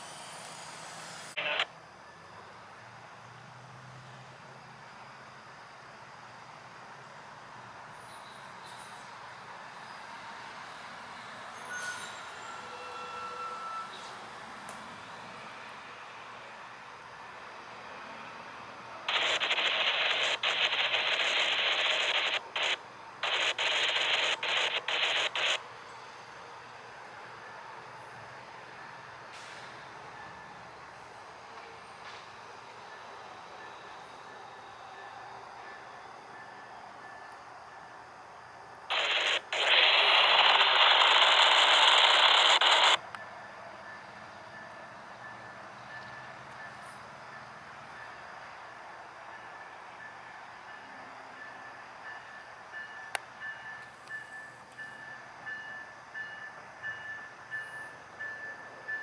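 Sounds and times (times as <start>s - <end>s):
radio hiss: 0.0s - 1.7s, 19.0s - 25.6s, 38.9s - 43.0s
radio static burst: 1.3s - 1.7s, 19.1s - 25.6s, 38.9s - 43.0s.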